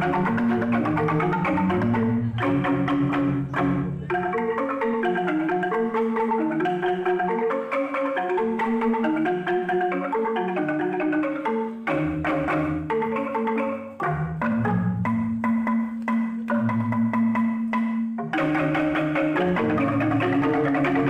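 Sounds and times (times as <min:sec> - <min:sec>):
deep bass bamboo notes: 0:00.0 - 0:07.3, 0:11.9 - 0:21.0
bamboo xylophones playing fast: 0:00.0 - 0:21.0.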